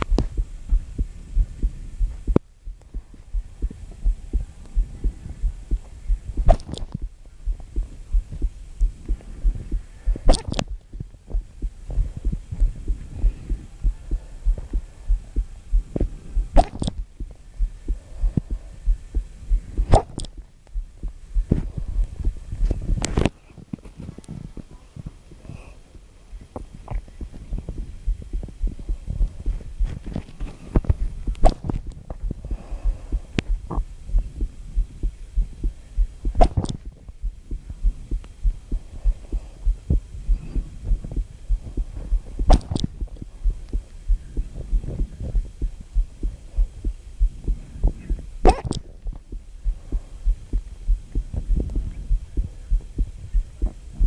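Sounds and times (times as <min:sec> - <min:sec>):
rapid low thumps: 0:00.0 - 0:23.3, 0:26.0 - 0:54.0
person hiccuping: 0:48.4 - 0:48.8.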